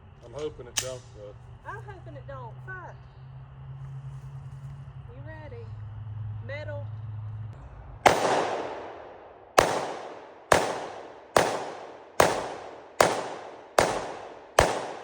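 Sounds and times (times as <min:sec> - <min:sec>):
pistol shots with echo: 0:08.0 - 0:15.0.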